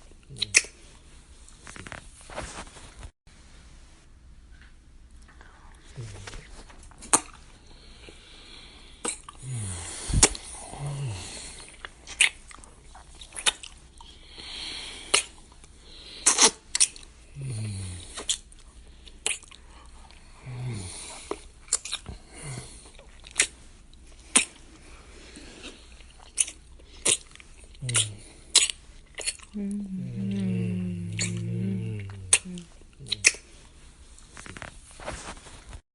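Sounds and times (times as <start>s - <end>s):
lip smacks: 0.2s - 0.8s, 4.6s - 8.2s, 9.0s - 9.4s, 10.1s - 10.6s, 11.6s - 14.2s, 15.0s - 17.1s, 18.0s - 20.3s, 21.1s - 22.2s, 22.8s - 24.8s, 25.6s - 29.7s, 31.1s - 33.6s
breathy noise: 7.6s - 11.9s, 29.5s - 33.7s
low falling hums: 29.5s - 33.3s.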